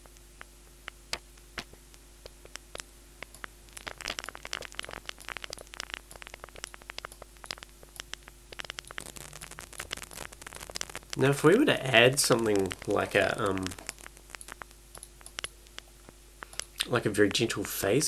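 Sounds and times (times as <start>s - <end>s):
synthesized crackling clicks: 0.0s - 18.0s.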